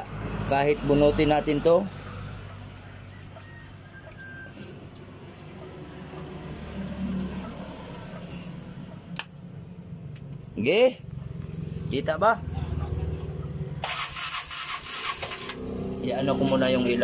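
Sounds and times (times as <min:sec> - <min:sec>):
chick peeping: 0:02.3 - 0:09.1, 0:11.1 - 0:13.8.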